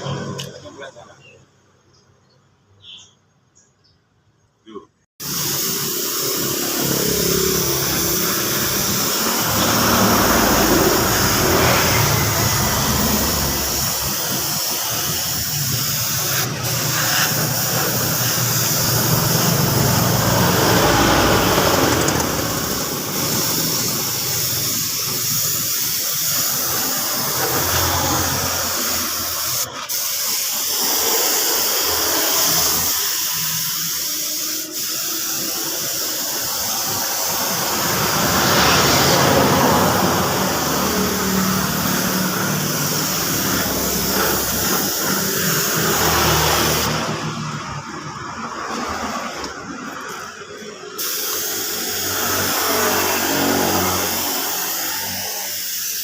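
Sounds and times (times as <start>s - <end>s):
paint spray gun hissing: 5.2s - 56.0s.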